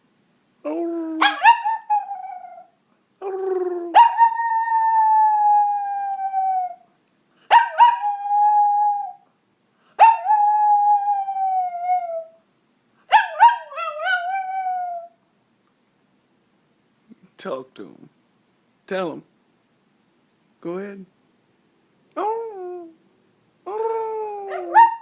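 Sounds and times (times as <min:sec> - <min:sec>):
dog howling: 0:00.7 - 0:06.9, 0:07.6 - 0:09.2, 0:10.0 - 0:12.4, 0:13.3 - 0:15.2, 0:24.0 - 0:25.0.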